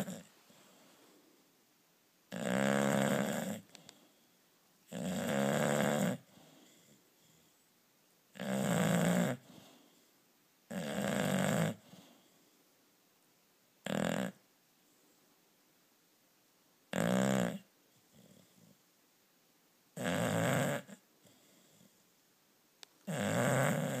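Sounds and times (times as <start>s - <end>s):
person snoring: 2.3s - 3.6s, 4.9s - 6.3s, 8.4s - 9.4s, 16.9s - 17.7s, 20.0s - 21.0s, 23.1s - 24.0s.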